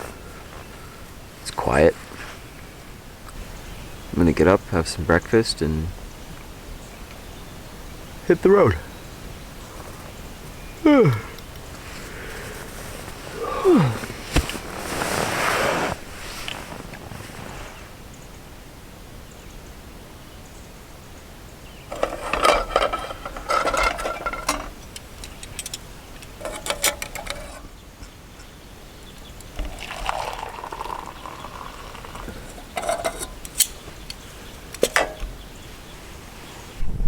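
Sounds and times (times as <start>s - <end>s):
cookware and utensils clinking: 21.9s - 27.7s, 29.5s - 33.7s, 34.8s - 35.3s.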